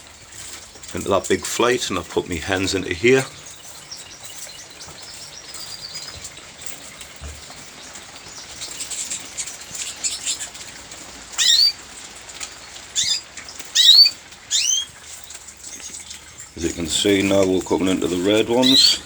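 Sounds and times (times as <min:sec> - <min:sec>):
canaries chirping: 0:00.3 - 0:19.0
sweeping bird call notes: 0:11.4 - 0:11.8, 0:13.0 - 0:15.0, 0:18.6 - 0:19.0.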